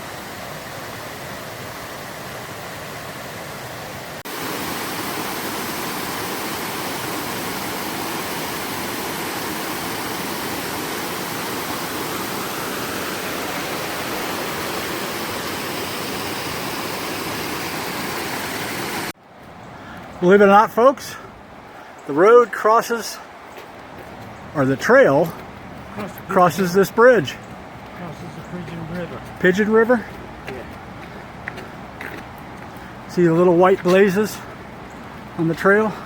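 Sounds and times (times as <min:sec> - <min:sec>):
fast-flowing river water: 0:00.0 - 0:19.2.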